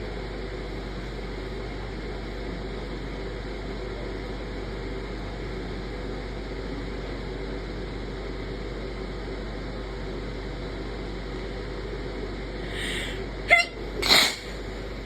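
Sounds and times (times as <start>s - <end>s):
short breathy hiss: 12.7s - 13.2s, 14.0s - 14.6s.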